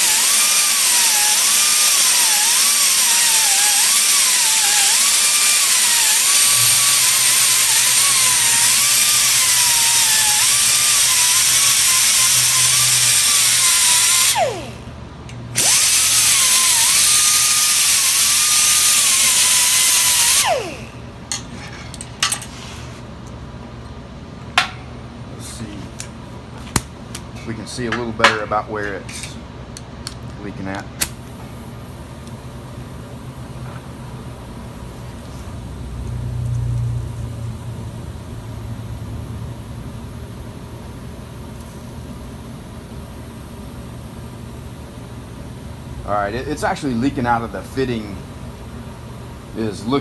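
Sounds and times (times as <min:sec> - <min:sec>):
grinder grinding metal: 0:00.0 - 0:14.8, 0:15.6 - 0:22.6, 0:46.3 - 0:48.2.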